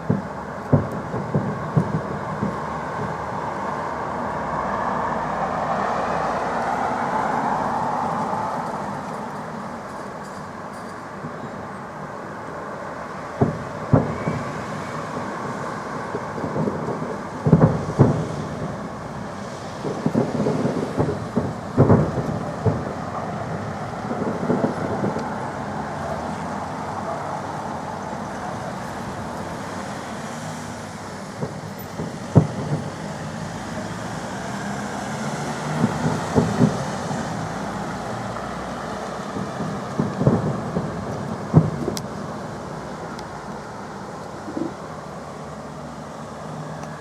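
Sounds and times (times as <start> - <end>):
fireworks booming: 0.0 - 5.4, 13.4 - 45.6
rolling rumble: 15.1 - 29.4, 35.6 - 45.9.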